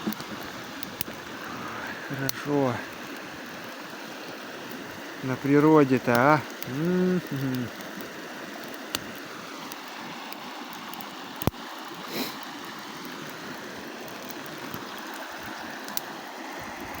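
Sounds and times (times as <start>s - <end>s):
campfire crackling: 0.0s - 17.0s.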